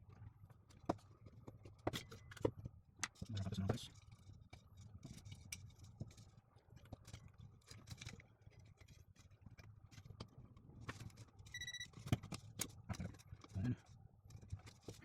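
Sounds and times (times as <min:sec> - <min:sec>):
high beep-like tone: 0:11.6 - 0:11.9.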